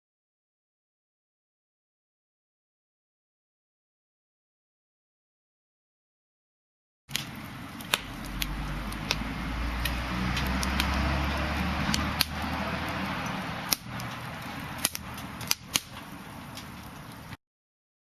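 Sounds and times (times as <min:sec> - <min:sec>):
wood fire crackling: 0:07.1 - 0:17.4.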